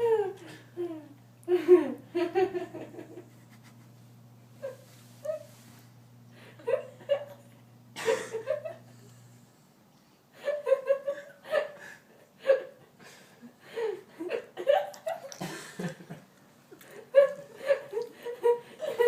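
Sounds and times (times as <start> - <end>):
woman laughing: 0.0 - 4.0, 4.6 - 5.5, 6.4 - 7.4, 8.0 - 8.9, 10.4 - 11.8, 13.8 - 16.2, 16.8 - 19.0.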